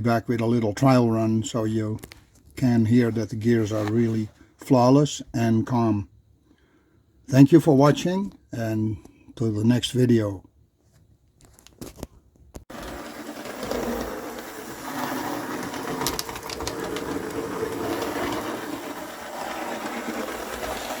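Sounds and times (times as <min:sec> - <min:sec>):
model train motor whirring: 0:12.7 - 0:21.0.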